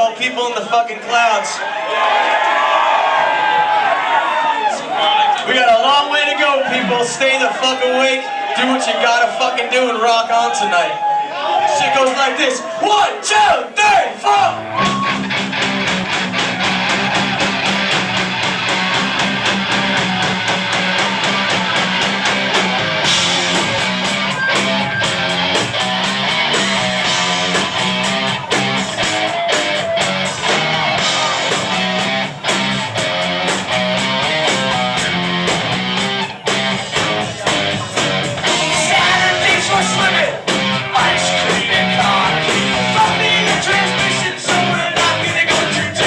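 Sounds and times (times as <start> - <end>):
strummed electric guitar: 14.5 - 46.0
drum hits: 14.9 - 46.0.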